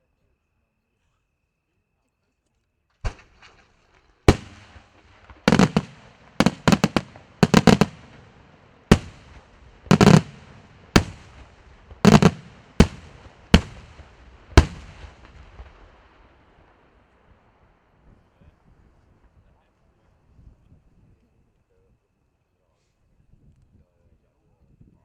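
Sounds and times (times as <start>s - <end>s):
fireworks bangs: 3.0s - 16.8s.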